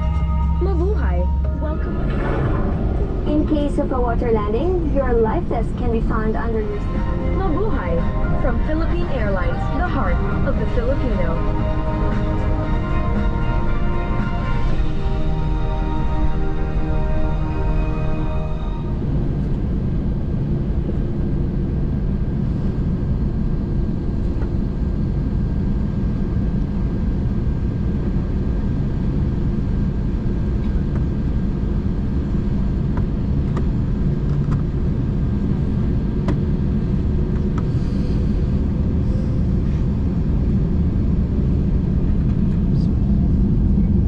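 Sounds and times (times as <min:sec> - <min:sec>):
airplane cabin engine rumble: 0:00.0 - 0:44.0.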